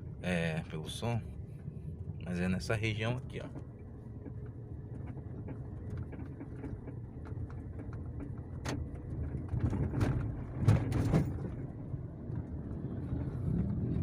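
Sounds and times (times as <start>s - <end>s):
suspension clicking and knocking: 3.3s - 14.0s
car driving over uneven pavement: 3.6s - 14.0s.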